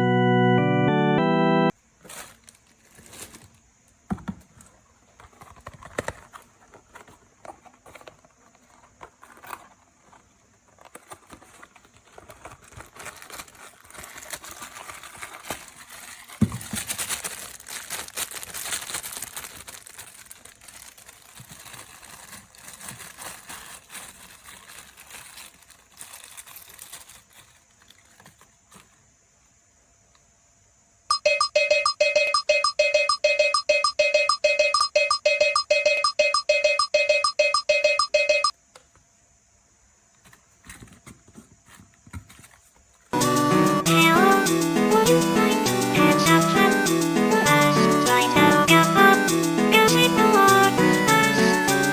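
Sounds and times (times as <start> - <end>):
packaging crinkling and tearing: 2.0 - 3.7, 4.6 - 29.0.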